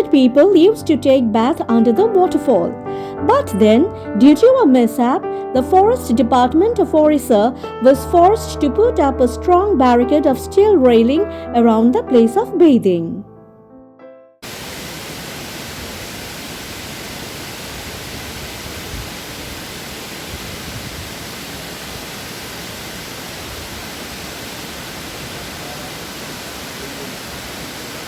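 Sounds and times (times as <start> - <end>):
waterfall rushing: 14.4 - 28.0.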